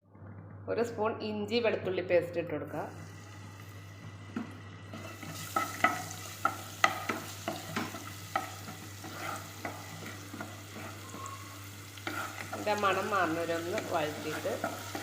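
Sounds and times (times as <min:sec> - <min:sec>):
spoon scraping and tapping pan: 0:04.4 - 0:11.2, 0:12.0 - 0:15.0
paste sizzling in oil: 0:04.9 - 0:15.0.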